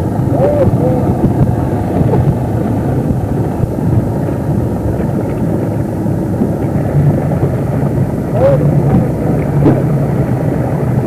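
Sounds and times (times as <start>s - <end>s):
low motor drone: 0.0s - 11.0s
wind buffeting microphone: 0.0s - 11.0s.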